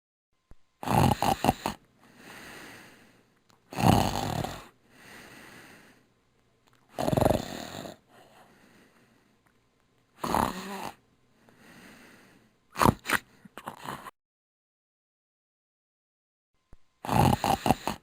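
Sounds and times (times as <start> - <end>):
loud snoring: 0.8 - 2.8, 3.7 - 4.8, 6.9 - 8.4, 10.2 - 11.0, 12.7 - 14.1, 17.0 - 18.0
soft breathing: 2.0 - 3.4, 4.5 - 6.2, 7.6 - 9.6, 10.3 - 12.6.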